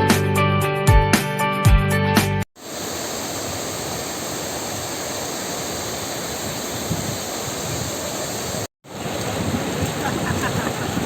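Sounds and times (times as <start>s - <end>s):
waterfall splashing: 2.6s - 11.0s.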